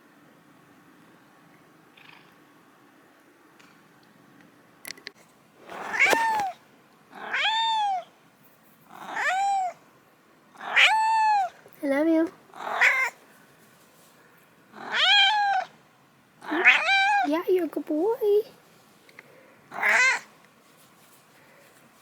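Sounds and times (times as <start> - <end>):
cat meowing: 5.8 - 6.6, 7.2 - 8.1, 9.0 - 9.8, 10.6 - 11.6, 12.6 - 13.2, 14.8 - 15.8, 16.4 - 17.3, 19.7 - 20.3.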